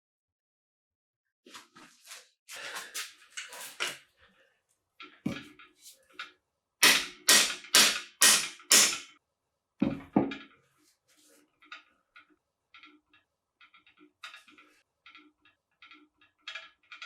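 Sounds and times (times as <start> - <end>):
hammer striking metal: 6.8 - 9.2.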